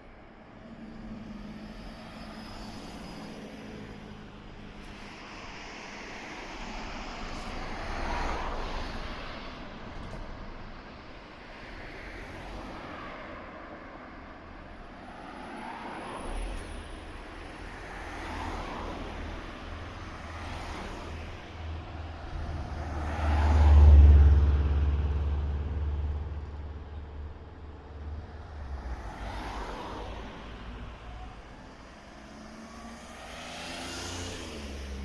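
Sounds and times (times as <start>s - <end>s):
road vehicles passing: 0.3s - 35.0s.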